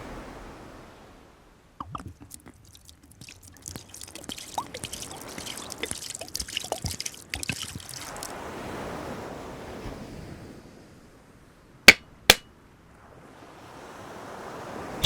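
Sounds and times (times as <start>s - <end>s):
sand scrub stirred in bowl: 2.1s - 8.4s.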